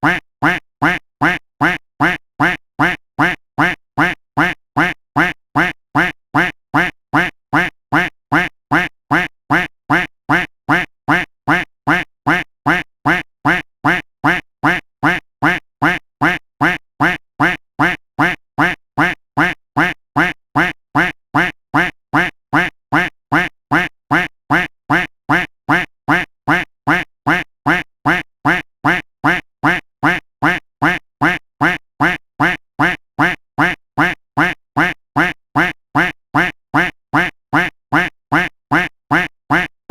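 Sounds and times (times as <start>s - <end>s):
duck quack sound effect: 0.0s - 39.9s.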